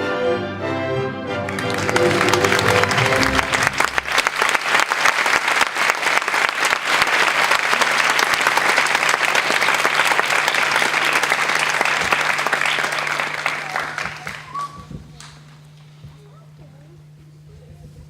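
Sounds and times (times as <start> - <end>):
orchestral music: 0.0 - 4.4
audience applauding: 1.4 - 15.8.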